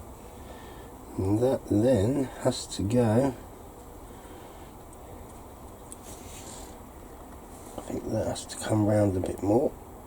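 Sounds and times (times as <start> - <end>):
faint high rustle: 3.8 - 6.8.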